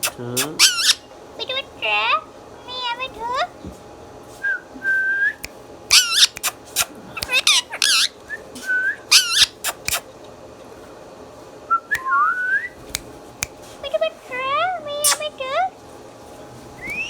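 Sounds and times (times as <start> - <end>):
parrot whistles: 0.0 - 1.0, 4.5 - 10.0, 16.8 - 17.0
parrot screeching: 0.0 - 1.1, 5.9 - 8.2, 9.1 - 10.0, 15.0 - 15.3
parrot clicks: 5.4 - 8.0, 9.2 - 10.1.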